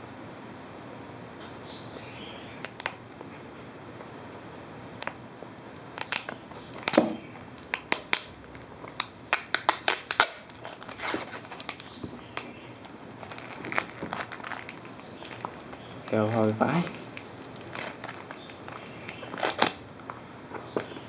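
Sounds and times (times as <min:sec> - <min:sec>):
packaging rustling: 0:06.0 - 0:19.8
plastic packaging crinkling and clicking: 0:06.0 - 0:21.0.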